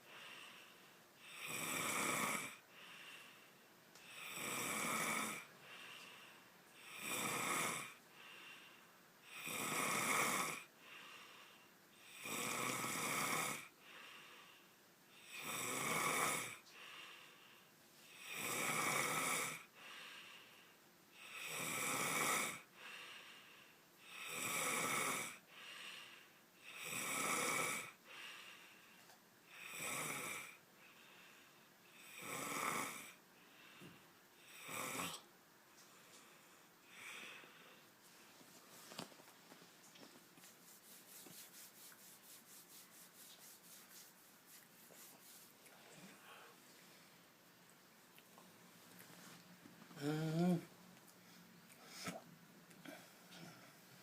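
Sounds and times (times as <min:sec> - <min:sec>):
soft breathing: 0:00.0 - 0:01.0, 0:02.7 - 0:04.2, 0:05.5 - 0:06.9, 0:08.0 - 0:09.0, 0:10.8 - 0:12.1, 0:13.7 - 0:14.8, 0:16.6 - 0:18.2, 0:19.7 - 0:20.8, 0:22.7 - 0:23.9, 0:25.5 - 0:26.4, 0:28.0 - 0:29.2, 0:30.8 - 0:32.0, 0:33.3 - 0:34.2, 0:35.1 - 0:47.5, 0:48.8 - 0:54.0
person snoring loudly: 0:01.3 - 0:02.6, 0:04.2 - 0:05.5, 0:06.9 - 0:08.0, 0:09.4 - 0:10.7, 0:15.3 - 0:16.6, 0:18.2 - 0:19.7, 0:21.3 - 0:22.6, 0:32.0 - 0:33.2, 0:50.0 - 0:50.7.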